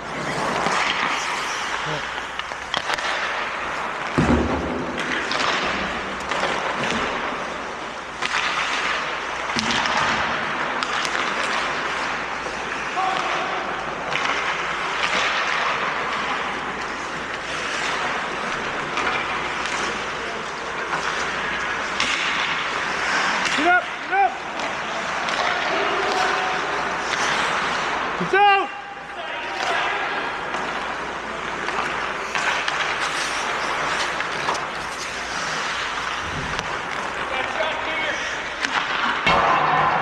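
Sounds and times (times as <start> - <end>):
hockey sticks and puck clacking: 0.0 - 40.0
skates scraping ice: 0.0 - 40.0
rink noise: 30.6 - 39.0.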